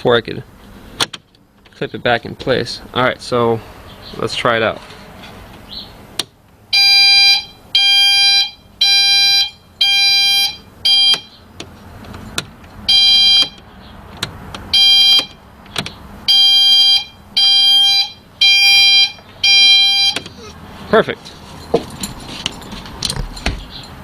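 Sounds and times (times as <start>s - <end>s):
truck reverse beeper: 6.7s - 11.4s, 12.9s - 13.6s, 14.7s - 15.4s, 16.3s - 20.5s.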